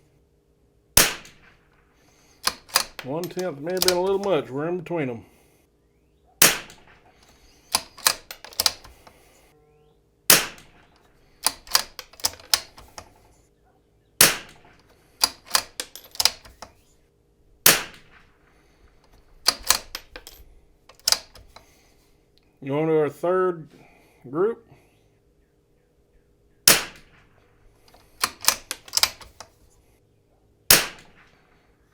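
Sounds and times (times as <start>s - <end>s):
rifle shots: 1.0s - 4.4s, 6.4s - 9.3s, 10.3s - 13.1s, 14.2s - 16.6s, 17.6s - 20.4s, 26.6s - 29.4s, 30.7s - 31.6s
rifle bolt clicks: 2.4s - 4.4s, 6.4s - 9.2s, 10.3s - 13.2s, 14.2s - 16.8s, 17.7s - 18.3s, 19.0s - 21.7s, 26.7s - 29.6s, 30.7s - 31.4s.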